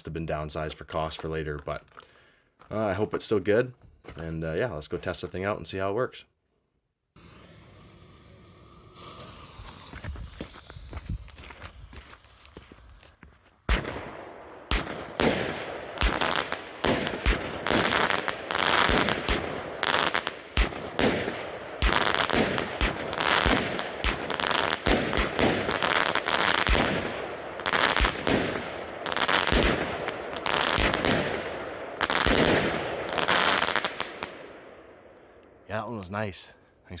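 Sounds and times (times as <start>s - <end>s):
firework hiss and crackle: 7.2s - 34.5s
firework cake bangs: 13.7s - 34.2s.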